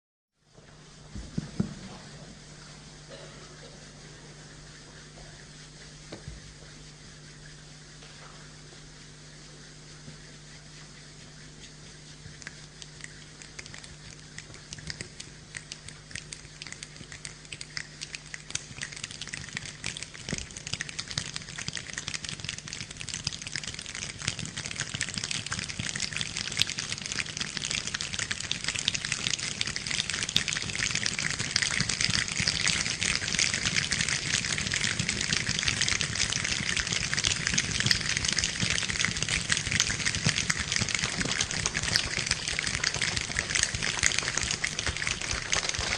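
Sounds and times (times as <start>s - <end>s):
rain falling: 29.3s - 45.9s.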